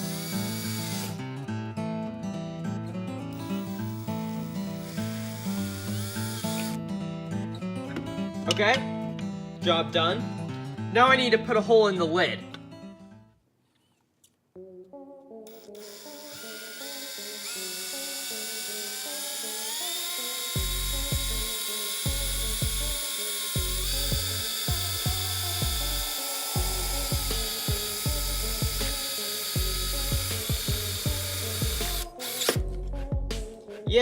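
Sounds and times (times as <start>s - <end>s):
electric drill whining: 0.0s - 1.2s, 3.3s - 6.8s, 15.5s - 32.6s
music with heavy bass beat: 20.6s - 21.5s, 22.1s - 23.0s, 23.6s - 34.0s.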